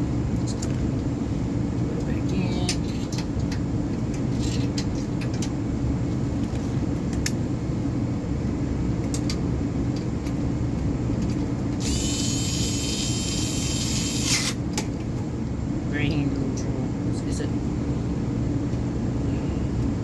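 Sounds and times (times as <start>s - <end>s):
low mechanical hum: 0.0s - 20.0s
high hissing whir of small tool: 11.8s - 14.6s.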